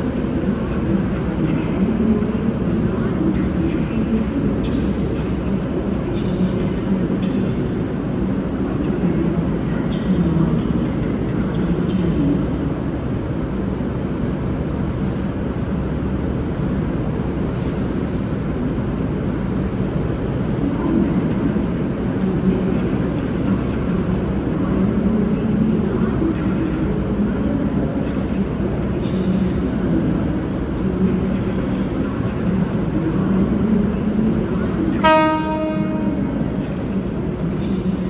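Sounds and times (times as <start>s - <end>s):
diesel train engines rumbling: 0.0s - 38.0s.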